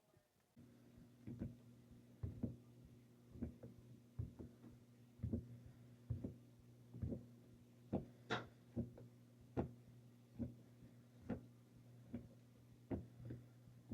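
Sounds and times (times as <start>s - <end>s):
low steady hum: 0.0s - 13.9s
stair stepper knocking: 2.2s - 2.6s, 3.4s - 6.4s, 7.9s - 9.0s.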